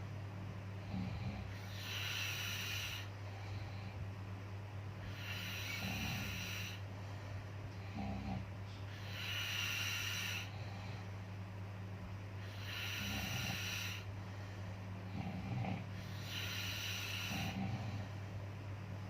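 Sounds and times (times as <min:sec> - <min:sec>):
steady low hum: 0:00.0 - 0:19.0
person snoring: 0:00.8 - 0:03.8, 0:05.0 - 0:06.8, 0:07.8 - 0:11.0, 0:12.4 - 0:14.1, 0:15.1 - 0:18.2.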